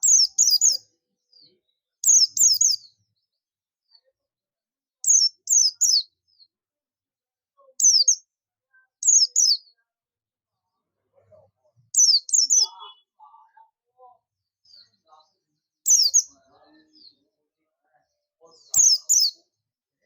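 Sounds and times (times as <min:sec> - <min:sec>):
bird chirping: 0:00.0 - 0:04.1, 0:05.0 - 0:06.5, 0:07.6 - 0:09.8, 0:11.2 - 0:13.6, 0:14.6 - 0:19.5.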